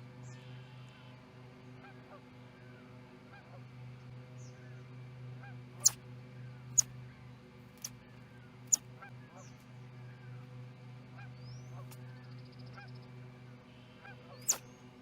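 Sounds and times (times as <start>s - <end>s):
bird sneezing: 14.4s - 14.6s.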